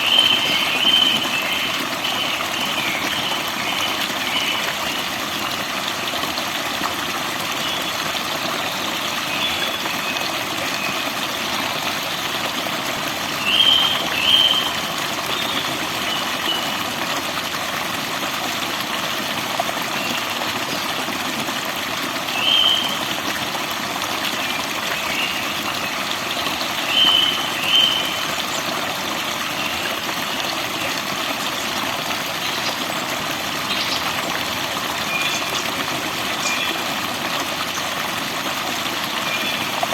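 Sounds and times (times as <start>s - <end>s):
waterfall rushing: 24.4s - 39.9s
small birds chirping: 33.6s - 34.4s.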